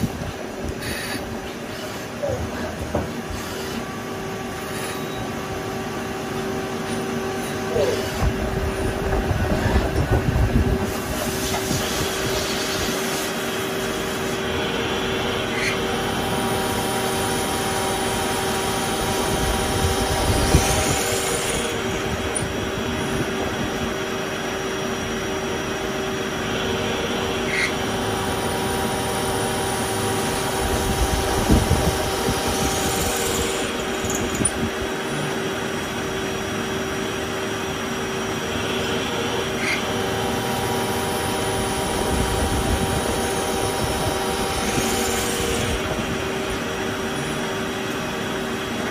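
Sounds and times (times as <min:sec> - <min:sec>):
lathe motors humming: 0:00.0 - 0:48.9
metal cutting noise: 0:00.0 - 0:48.9.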